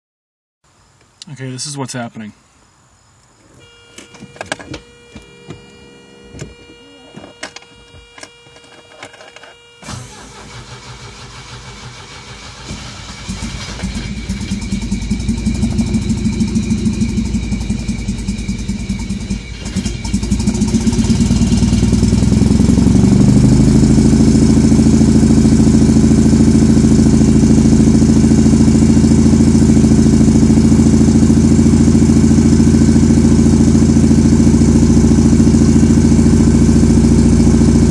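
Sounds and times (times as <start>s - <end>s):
car engine running: 3.4s - 37.9s
car engine starter cranking: 3.9s - 22.7s.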